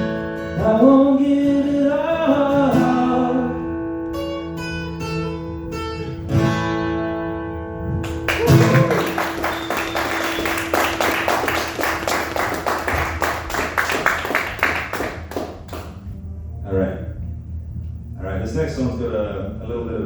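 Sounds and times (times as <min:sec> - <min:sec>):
acoustic guitar chord ringing: 0:00.0 - 0:17.4
audience applause: 0:08.0 - 0:16.0
person whooping: 0:08.3 - 0:10.5.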